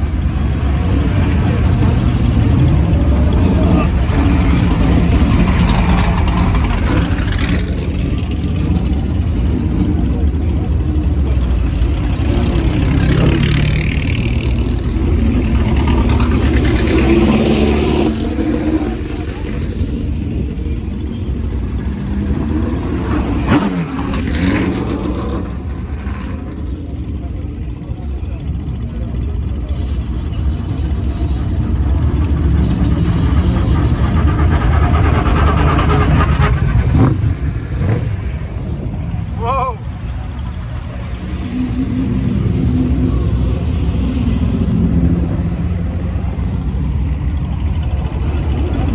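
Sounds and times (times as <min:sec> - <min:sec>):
racing car engines at low speed: 0:00.0 - 0:48.9
high-pitched engine passing by: 0:30.0 - 0:39.7.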